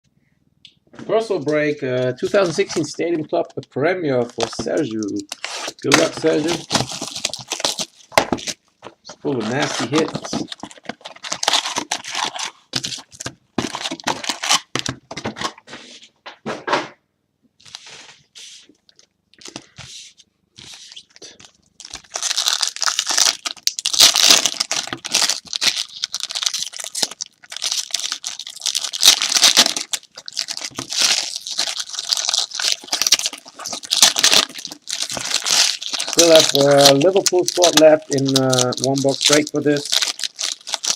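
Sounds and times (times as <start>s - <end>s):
wrappers tearing and crinkling: 4.2s - 8.6s, 9.2s - 14.9s, 20.6s - 40.9s.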